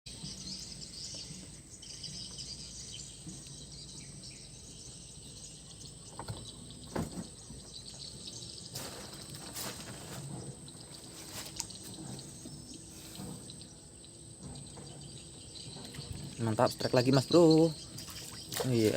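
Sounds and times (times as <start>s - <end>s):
knocks and splashes: 17.6s - 18.9s.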